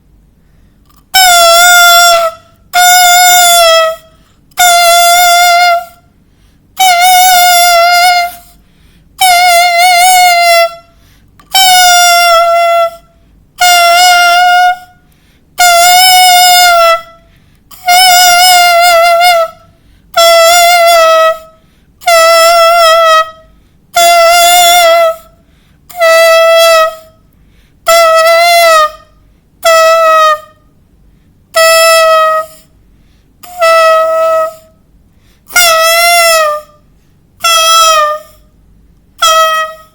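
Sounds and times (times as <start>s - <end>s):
clarinet wailing notes: 1.1s - 6.0s, 6.8s - 8.5s, 9.2s - 10.9s, 11.5s - 15.0s, 15.6s - 19.6s, 20.2s - 23.4s, 24.0s - 25.3s, 25.9s - 27.1s, 27.9s - 30.6s, 31.6s - 32.6s, 33.4s - 34.7s, 35.5s - 36.8s, 37.4s - 38.4s, 39.2s - 39.9s.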